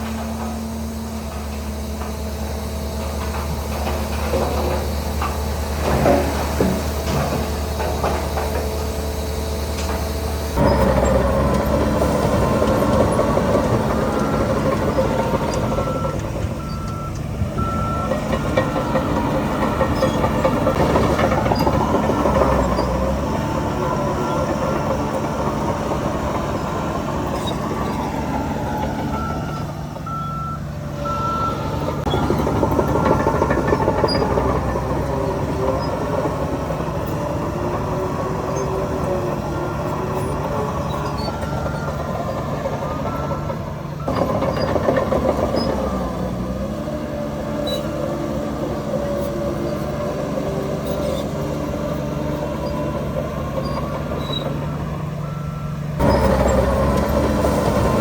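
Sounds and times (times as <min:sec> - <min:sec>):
diesel machinery running: 0:00.0 - 0:58.0
reversing alarm beeping: 0:09.4 - 0:36.4, 0:37.0 - 0:46.8, 0:49.1 - 0:58.0.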